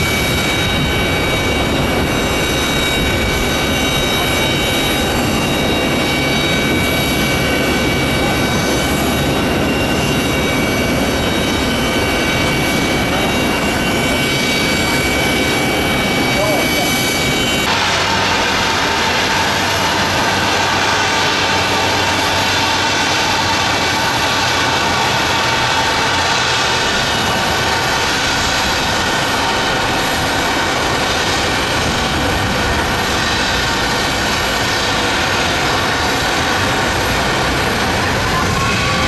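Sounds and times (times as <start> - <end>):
high fan whine: 0.0 - 16.6, 31.3 - 39.0
jet engine roar: 0.0 - 39.0.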